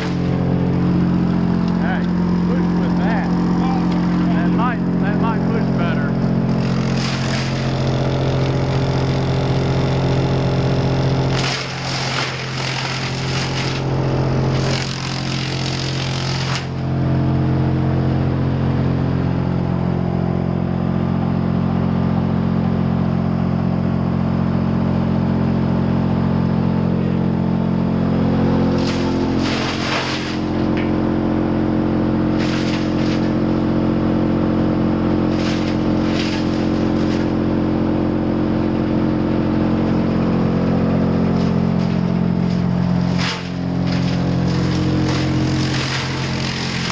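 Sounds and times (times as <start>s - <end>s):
bursts of harsh noise: 0.0s - 17.0s, 28.2s - 31.3s, 41.6s - 46.9s
wood chipper humming: 0.0s - 46.9s.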